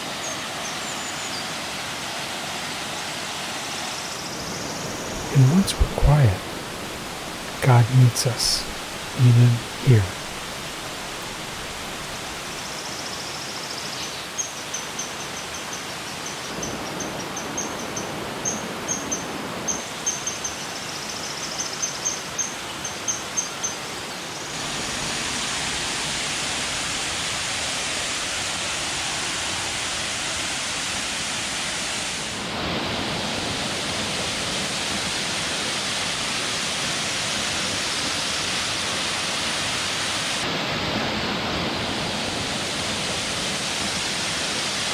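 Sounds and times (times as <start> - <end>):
waterfall rushing: 3.4 - 12.8.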